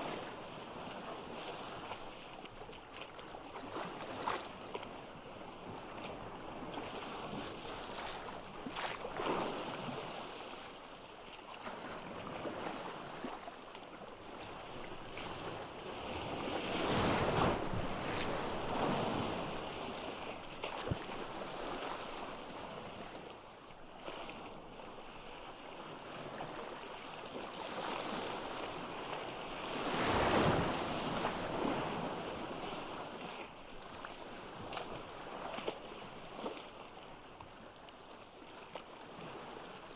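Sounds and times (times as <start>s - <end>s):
ocean waves breaking on beach: 28.9s - 33.2s.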